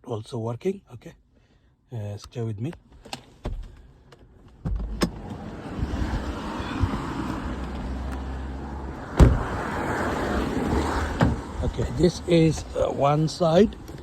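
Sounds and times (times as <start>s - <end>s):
car door clunk: 3.0s - 3.9s, 4.5s - 5.5s, 9.1s - 9.6s, 10.8s - 11.9s
steady rushing rumble: 5.1s - 7.8s.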